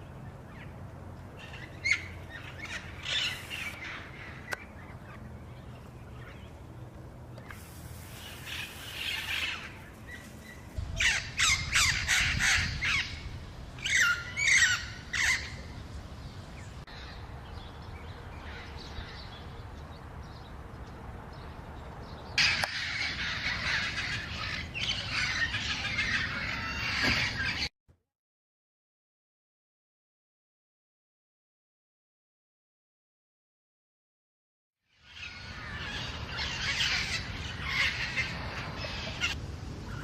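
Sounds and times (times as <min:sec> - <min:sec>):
parrots squawking: 0:08.4 - 0:09.8, 0:11.0 - 0:13.2, 0:13.8 - 0:15.6, 0:22.4 - 0:27.7, 0:35.0 - 0:39.4.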